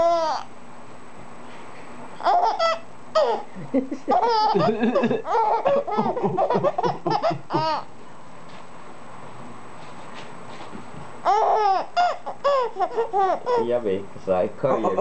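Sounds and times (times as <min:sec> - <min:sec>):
baby laughing: 0:02.2 - 0:07.9, 0:11.2 - 0:13.8.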